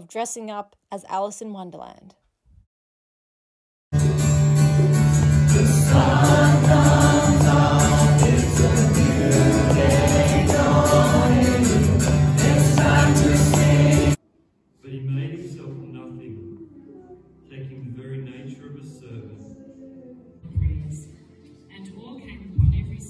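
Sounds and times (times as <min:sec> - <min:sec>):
instrumental accompaniment with beat: 0:04.0 - 0:14.2
group singing worship song: 0:05.2 - 0:14.2.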